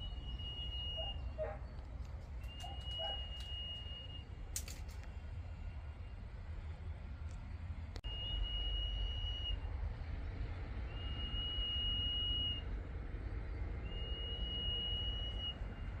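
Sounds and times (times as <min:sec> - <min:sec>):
bird whistling: 0:00.0 - 0:01.7, 0:02.4 - 0:04.2, 0:13.9 - 0:15.6.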